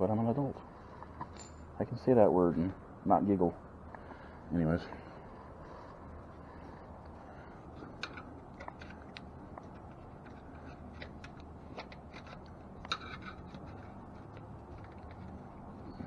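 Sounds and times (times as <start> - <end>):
faint steady low hum: 0.0 - 16.0
metallic clicks of bicycle spokes: 7.9 - 16.0.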